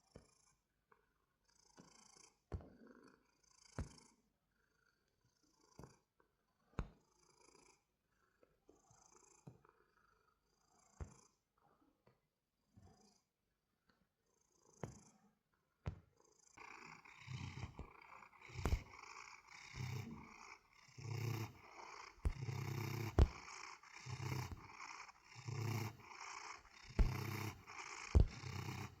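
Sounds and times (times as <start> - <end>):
cat purring: 16.6 - 29.0.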